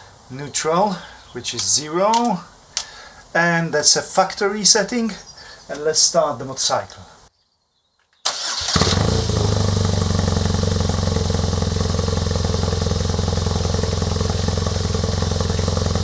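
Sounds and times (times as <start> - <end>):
motorcycle starting and idling: 8.3 - 16.0.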